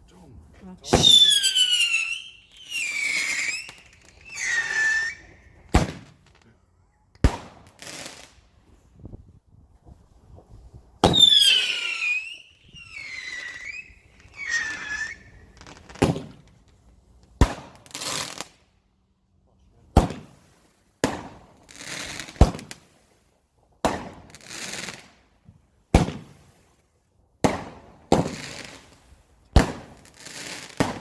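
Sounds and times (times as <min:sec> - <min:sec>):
whistling fireworks screeching: 0:00.8 - 0:06.0, 0:11.0 - 0:16.3
fireworks bangs: 0:00.8 - 0:06.3, 0:07.2 - 0:08.3, 0:11.0 - 0:16.5, 0:20.0 - 0:20.4, 0:27.4 - 0:28.9, 0:29.6 - 0:31.0.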